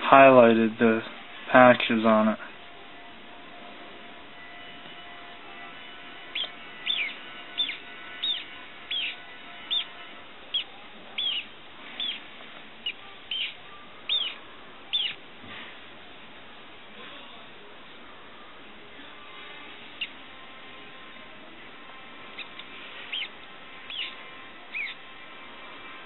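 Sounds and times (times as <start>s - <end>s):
mouse squeaking: 6.3s - 9.9s, 10.5s - 15.2s, 19.9s - 20.2s, 22.3s - 25.0s.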